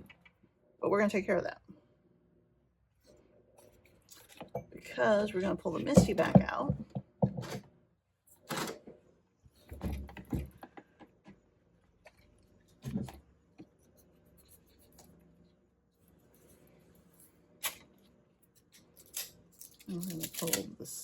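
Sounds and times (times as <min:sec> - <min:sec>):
thumps and knocks on table: 0:05.8 - 0:07.6.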